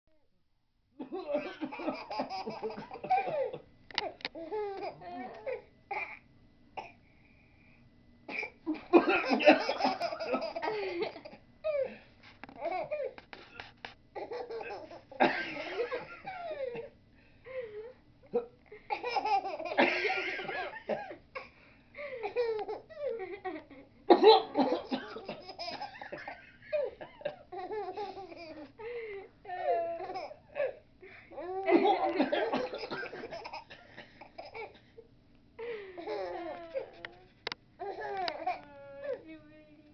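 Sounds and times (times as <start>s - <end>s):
baby laughing: 1.2s - 6.0s, 8.3s - 11.9s, 14.2s - 16.9s, 18.9s - 20.7s, 22.2s - 26.9s, 27.5s - 28.7s, 29.9s - 30.4s, 31.4s - 34.7s, 36.0s - 37.2s, 37.8s - 38.6s
baby coughing: 1.4s - 3.6s, 5.9s - 6.2s, 24.1s - 26.0s, 31.8s - 34.9s.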